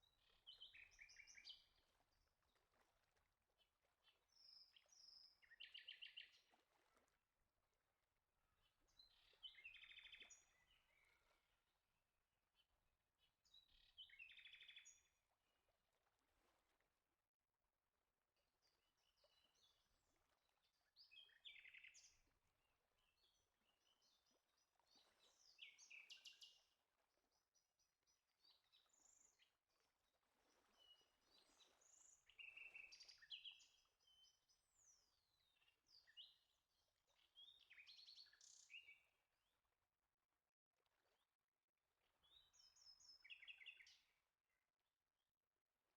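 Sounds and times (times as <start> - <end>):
faint birdsong chirps and trills: 0.0 - 16.8, 17.7 - 44.7.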